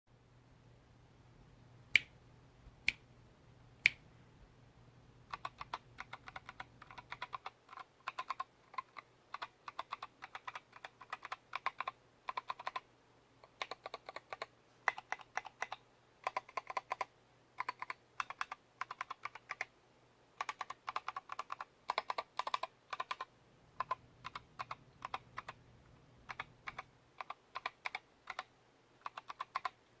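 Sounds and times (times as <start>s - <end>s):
faint low hum: 0.1s - 30.0s
mechanical keyboard typing: 5.3s - 19.7s, 20.4s - 25.6s, 26.2s - 30.0s.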